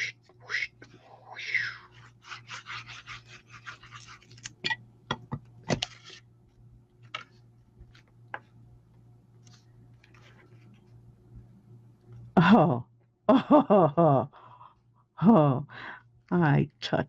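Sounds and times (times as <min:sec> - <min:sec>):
paper rubbing strokes: 0:00.7 - 0:04.5.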